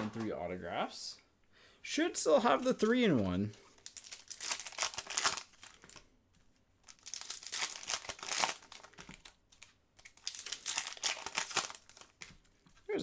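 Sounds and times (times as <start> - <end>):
wrapper crinkling and tearing: 3.7 - 6.1, 6.8 - 12.4.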